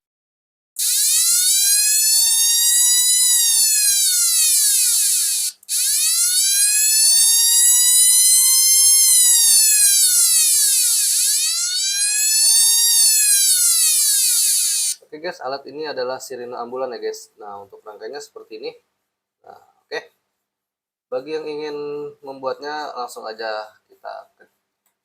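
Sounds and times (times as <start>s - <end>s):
electronic siren wailing: 0.8s - 15.0s.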